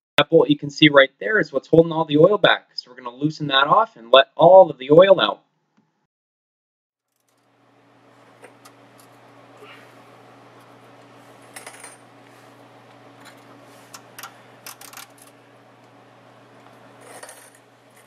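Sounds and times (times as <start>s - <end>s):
steady low hum: 7.5s - 18.0s.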